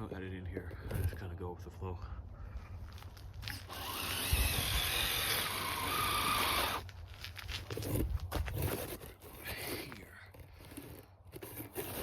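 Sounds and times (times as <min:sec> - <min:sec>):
electric motor and gears whining: 0:03.4 - 0:06.9.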